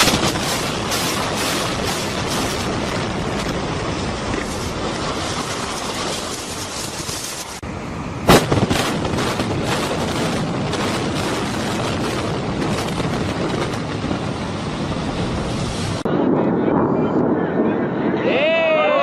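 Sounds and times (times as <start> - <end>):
explosive cracks: 0.0 - 7.6, 8.3 - 14.2
steady rushing noise: 0.0 - 19.0
explosive bang: 8.3 - 12.0.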